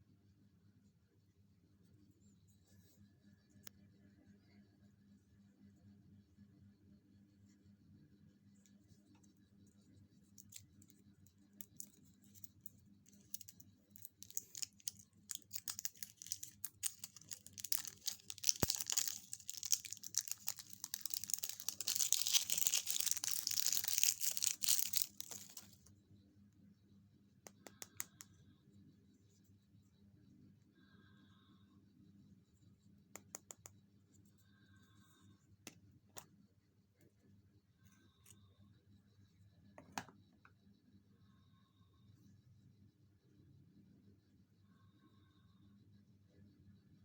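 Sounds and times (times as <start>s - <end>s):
packaging wrapper crinkling: 11.7s - 25.9s.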